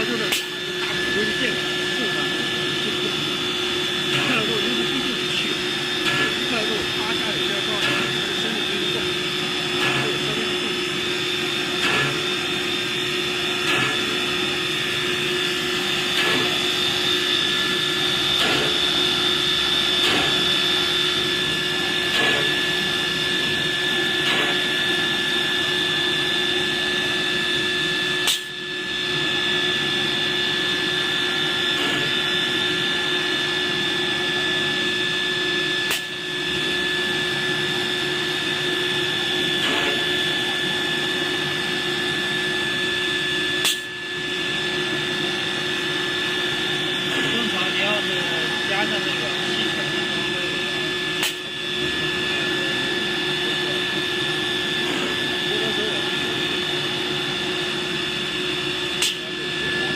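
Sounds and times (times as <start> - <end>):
machine noise: 0.0 - 59.9
spindle whine: 0.0 - 59.9.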